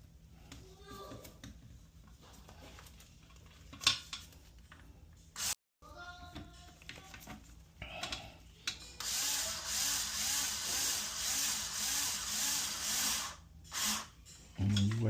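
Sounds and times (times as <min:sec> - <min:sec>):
power drill driving a screw: 0:05.4 - 0:05.6, 0:09.0 - 0:14.1.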